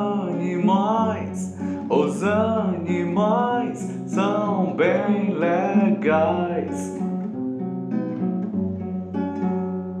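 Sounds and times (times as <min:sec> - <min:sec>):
man singing: 0:00.0 - 0:07.2
acoustic guitar strumming: 0:00.0 - 0:10.0.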